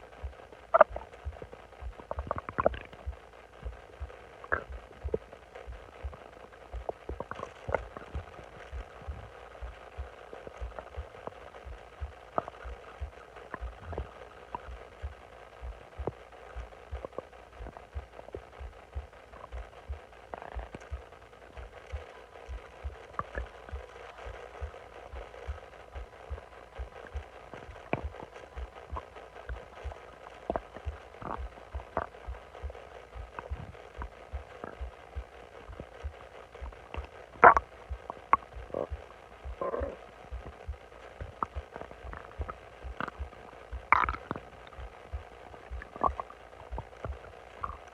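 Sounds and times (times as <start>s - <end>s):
stomach gurgling: 0.0s - 47.9s.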